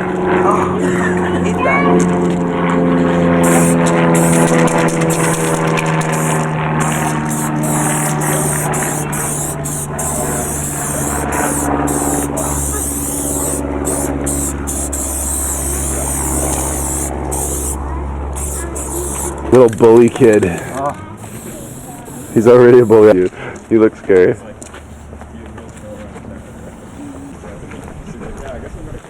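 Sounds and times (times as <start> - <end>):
low engine drone: 0.0 - 19.8
aerosol spray paint hissing: 3.4 - 17.8, 18.4 - 19.4, 20.6 - 23.0, 25.8 - 27.4.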